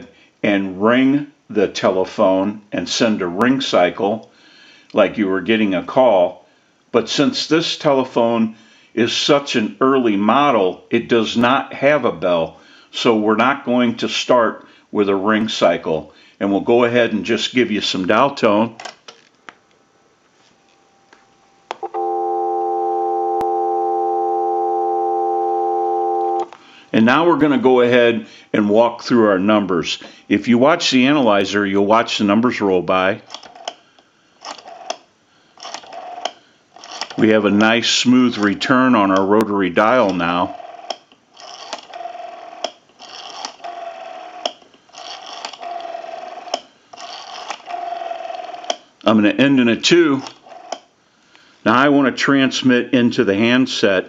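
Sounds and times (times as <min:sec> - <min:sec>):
telephone dial tone: 0:21.7 - 0:26.5
rotary dial whirring: 0:34.4 - 0:37.3, 0:40.0 - 0:48.8.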